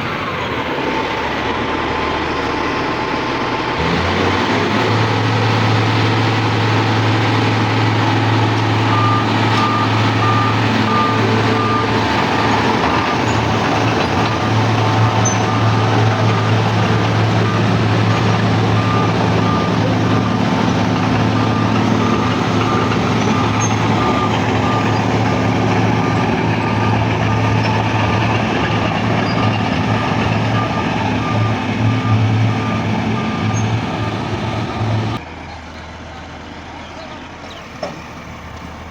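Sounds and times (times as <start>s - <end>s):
road milling machine engine droning: 0.0s - 38.9s
reversing alarm beeping: 4.9s - 35.2s.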